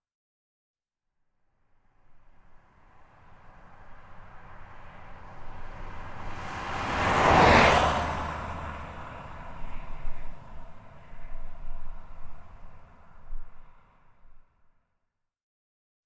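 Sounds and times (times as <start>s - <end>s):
car passing on highway: 1.6s - 14.4s.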